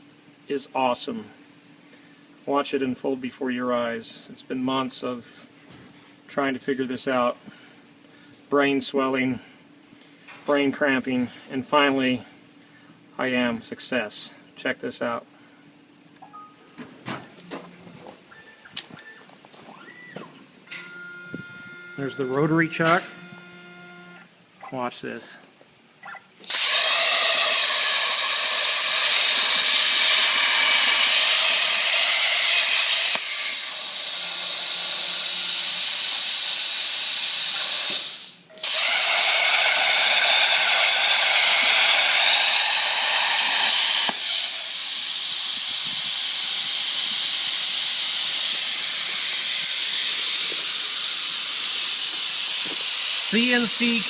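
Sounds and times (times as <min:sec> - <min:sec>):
plasma cutter torch hissing: 0:26.5 - 0:54.0.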